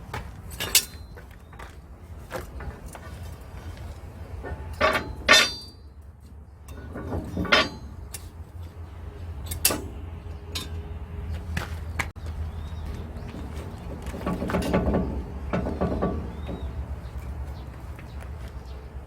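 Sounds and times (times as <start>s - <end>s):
metal clanking and knocking: 2.3s - 5.9s, 6.6s - 8.4s, 9.4s - 10.8s, 13.0s - 18.2s.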